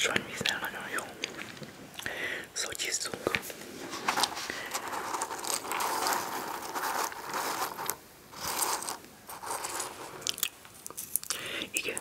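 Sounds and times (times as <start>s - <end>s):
plastic packet crinkling: 3.8s - 11.4s.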